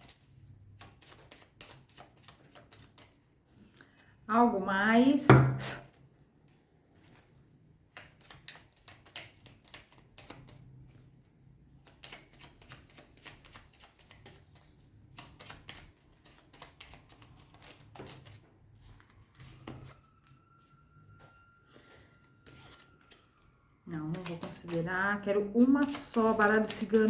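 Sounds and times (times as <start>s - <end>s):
cards being shuffled: 0.0s - 4.0s, 7.9s - 11.0s, 11.8s - 19.9s, 21.8s - 23.4s, 24.1s - 27.0s.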